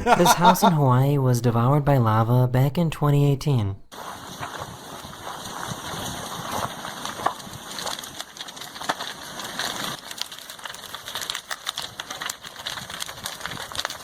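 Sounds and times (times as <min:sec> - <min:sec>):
fire crackling and popping: 0:03.9 - 0:14.0.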